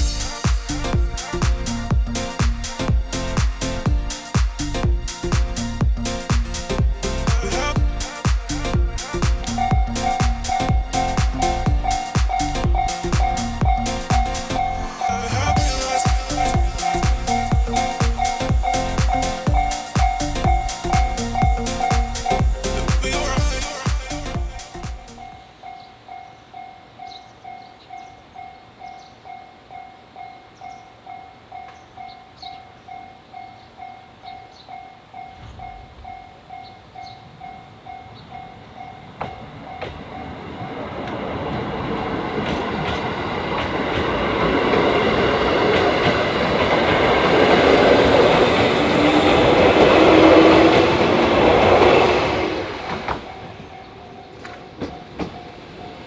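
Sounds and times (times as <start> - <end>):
level crossing alarm dinging: 9.4 - 25.2.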